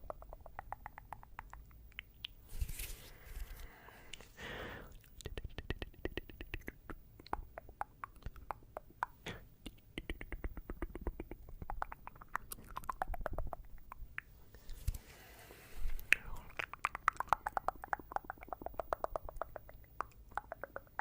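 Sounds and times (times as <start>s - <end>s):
tongue clicking: 0.0s - 2.4s, 5.0s - 14.3s, 16.0s - 21.0s.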